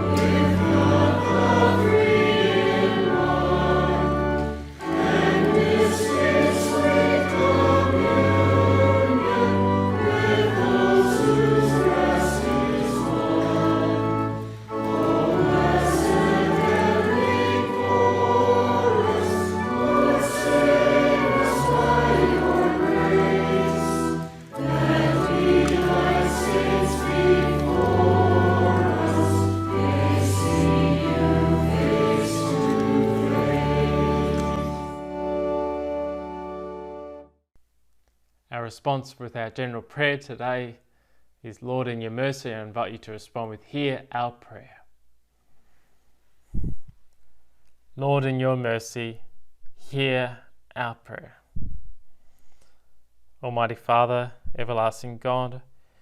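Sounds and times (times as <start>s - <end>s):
choir singing a hymn: 0.0s - 37.2s.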